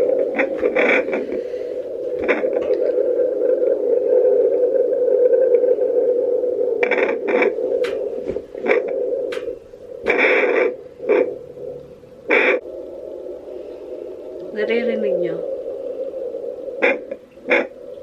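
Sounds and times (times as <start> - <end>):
scratchy rubbing bursts: 0.0 - 2.8, 6.8 - 11.4, 12.3 - 12.6, 16.8 - 17.8
static hum from loudspeaker: 0.0 - 5.1, 5.7 - 18.0
clicks: 2.2 - 3.0, 6.8 - 11.2.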